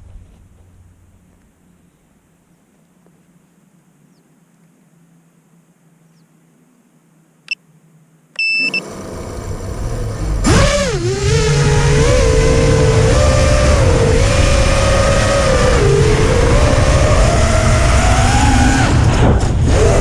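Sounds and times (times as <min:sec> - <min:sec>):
short loud beep: 0:08.4 - 0:08.8
quadcopter motors whining: 0:08.6 - 0:20.0.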